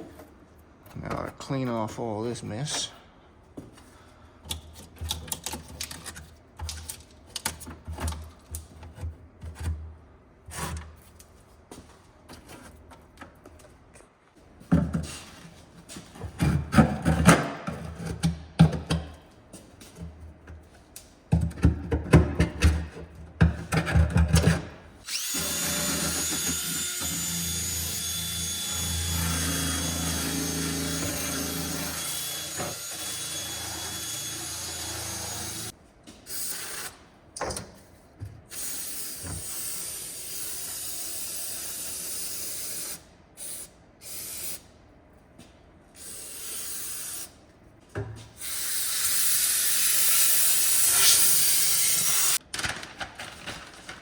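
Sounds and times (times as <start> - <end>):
power drill running: 25.0 - 35.7.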